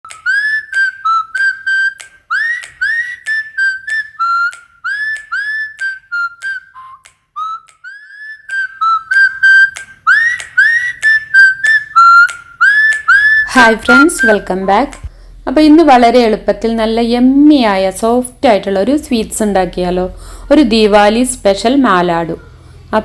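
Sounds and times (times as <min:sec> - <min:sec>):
high whistled notes: 0:00.0 - 0:15.1.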